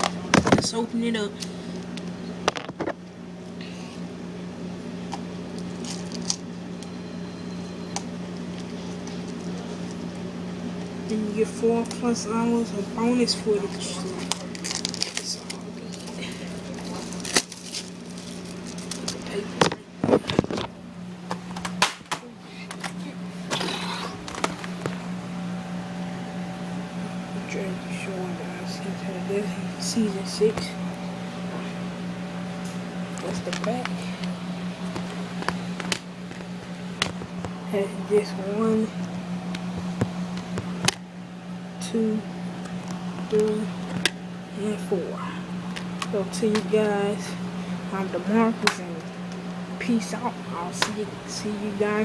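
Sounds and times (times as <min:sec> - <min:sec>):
steady low hum: 0:00.0 - 0:52.0
plastic packaging clicks and rustling: 0:14.2 - 0:20.7.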